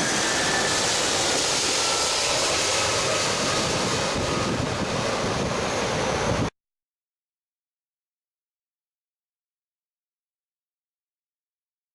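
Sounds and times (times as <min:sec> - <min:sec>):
airliner jet engine rush: 0:00.0 - 0:06.5.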